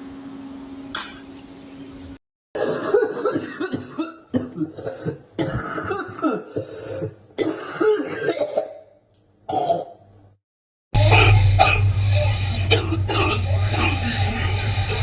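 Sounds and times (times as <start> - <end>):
person coughing wetly: 2.6 - 8.9, 9.5 - 10.0, 11.1 - 11.8, 12.7 - 13.4.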